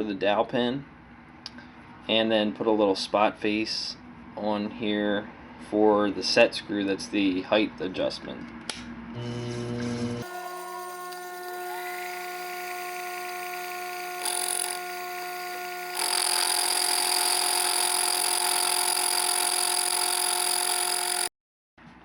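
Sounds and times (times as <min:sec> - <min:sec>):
machine tool motor whine: 0:09.2 - 0:21.3.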